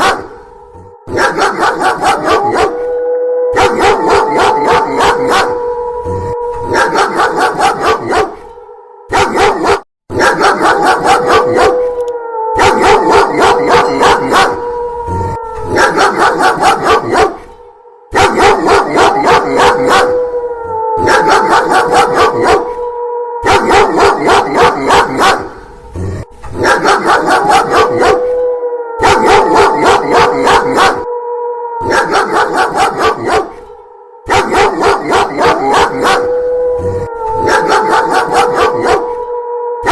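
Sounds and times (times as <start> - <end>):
dog barking: 0.0 - 0.4, 1.1 - 2.9, 3.5 - 5.6, 6.6 - 8.5, 9.1 - 11.9, 12.6 - 14.6, 15.7 - 20.2, 21.0 - 22.8, 23.4 - 25.6, 26.5 - 28.4, 29.0 - 31.1, 31.8 - 33.7, 34.3 - 36.4, 37.4 - 39.9
wolf howling: 0.0 - 39.9.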